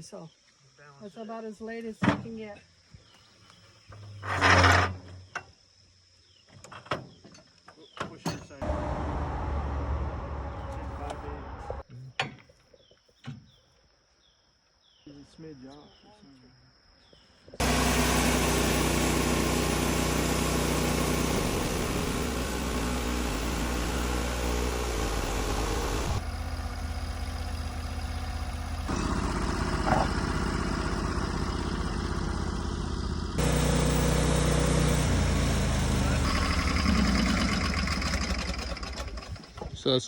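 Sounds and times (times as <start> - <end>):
sawmill engine running: 8.6 - 11.8, 17.6 - 39.4
blade sawing wood: 17.6 - 26.2, 33.4 - 37.2.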